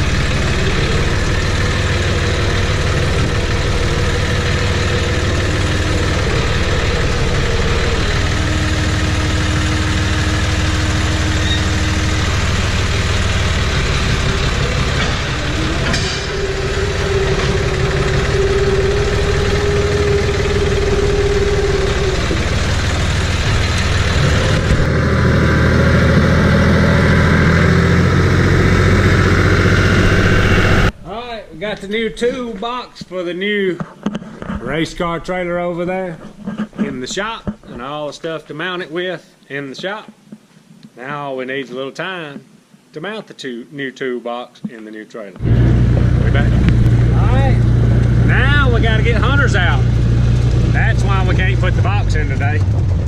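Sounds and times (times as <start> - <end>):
vehicle engine and road noise: 0.0 - 32.7, 45.4 - 53.0.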